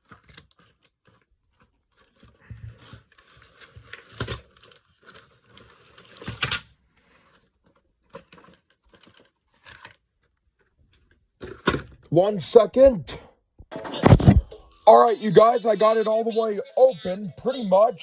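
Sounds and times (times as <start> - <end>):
packaging rustling and crinkling: 0.0 - 10.2.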